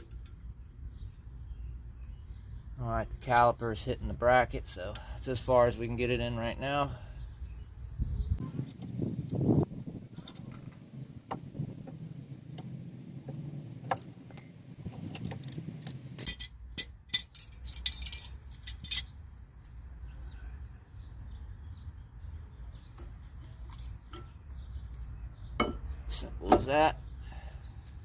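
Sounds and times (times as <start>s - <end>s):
metal tools clinking and rattling: 15.0s - 19.2s.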